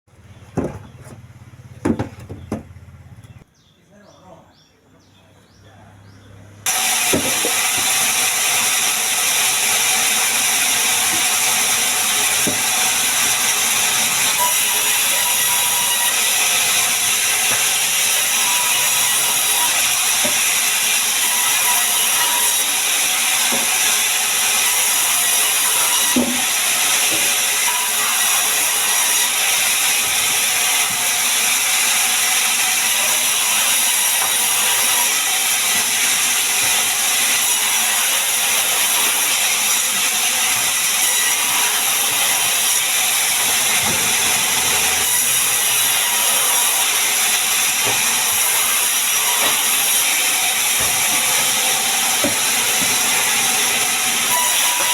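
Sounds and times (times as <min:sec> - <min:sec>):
wood knocks: 0:00.5 - 0:03.4
sawmill saw cutting wood: 0:06.6 - 0:54.9.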